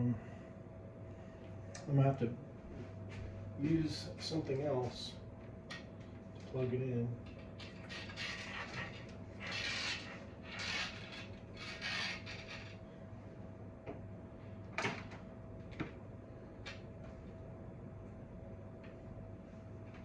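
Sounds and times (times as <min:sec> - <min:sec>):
faint steady hum: 0:00.0 - 0:20.0
cables rummaged rubbing and scraping: 0:07.3 - 0:12.8.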